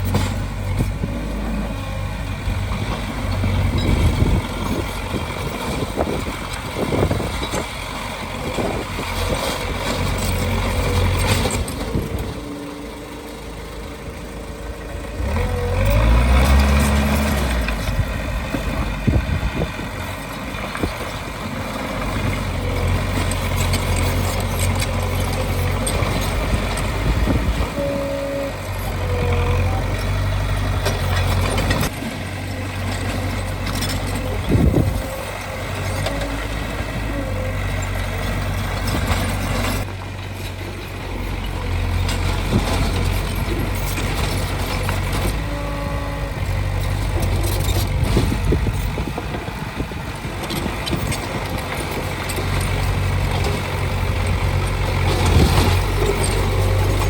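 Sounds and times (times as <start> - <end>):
heavy diesel engines droning: 0.0 - 57.0
wavering squeals: 43.0 - 48.0.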